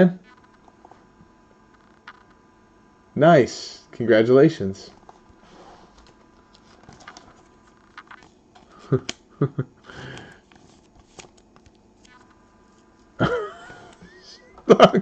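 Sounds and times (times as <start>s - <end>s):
trading cards rustling and clicking: 5.9s - 9.2s, 10.0s - 12.9s.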